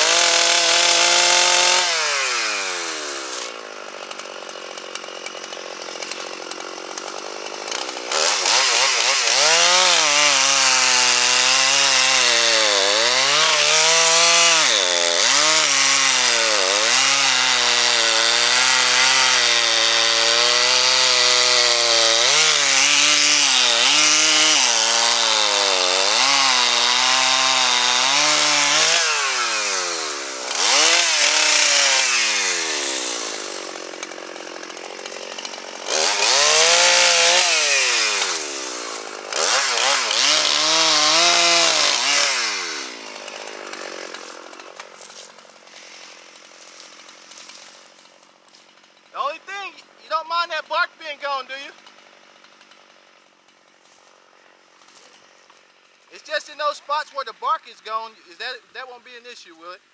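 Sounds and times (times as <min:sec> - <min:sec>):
chainsaw engine revving: 0:00.0 - 0:59.5
chainsaw cutting wood: 0:00.0 - 0:59.9.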